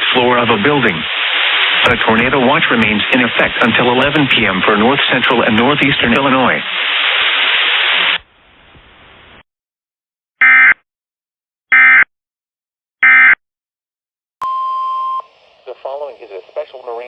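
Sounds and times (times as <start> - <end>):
radio static: 0.0 - 7.2, 15.6 - 17.0
steady beep: 14.4 - 15.3.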